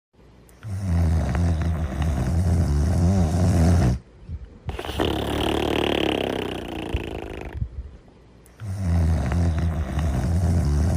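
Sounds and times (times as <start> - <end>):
person snoring: 0.6 - 4.0, 4.7 - 7.6, 8.6 - 10.9.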